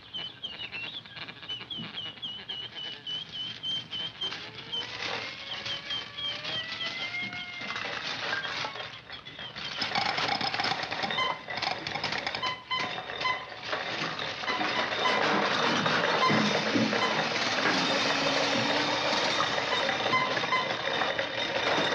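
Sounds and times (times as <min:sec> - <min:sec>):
clatter of clicks and tones: 0:00.1 - 0:21.9
tone gliding upward: 0:04.0 - 0:08.8, 0:14.5 - 0:21.9.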